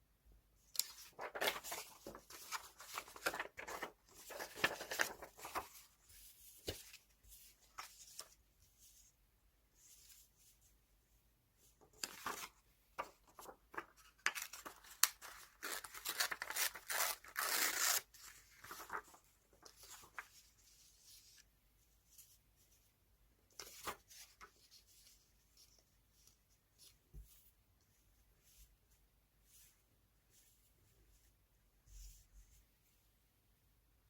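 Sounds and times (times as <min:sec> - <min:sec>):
paper rustling and tapping: 0:06.6 - 0:07.1.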